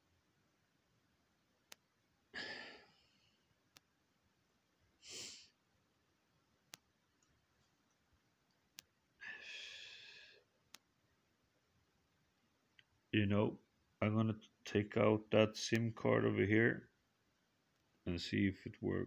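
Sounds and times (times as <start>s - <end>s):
faint sharp clicks: 1.7s - 1.9s, 6.7s - 9.0s, 10.7s - 10.9s
man sighing: 9.2s - 10.4s.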